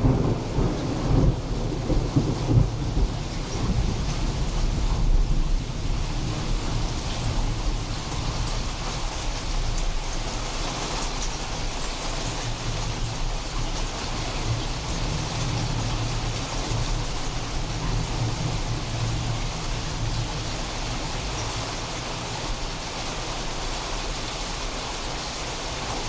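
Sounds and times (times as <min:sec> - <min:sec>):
low thunder rumble: 0:00.0 - 0:10.2, 0:12.6 - 0:22.9
steady rain falling: 0:00.0 - 0:26.0.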